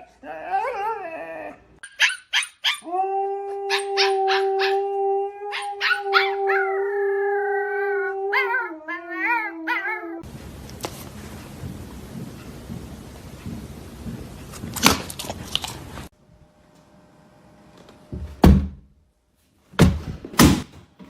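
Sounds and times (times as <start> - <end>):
dog howling: 2.6 - 10.3.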